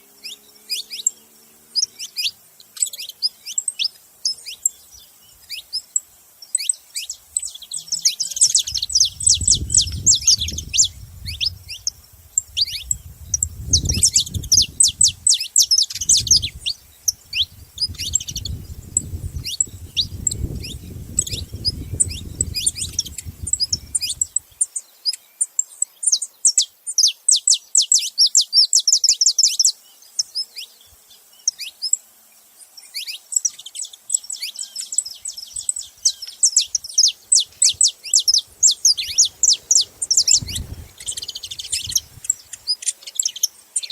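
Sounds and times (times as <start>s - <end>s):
finches chirping: 0.0s - 43.9s.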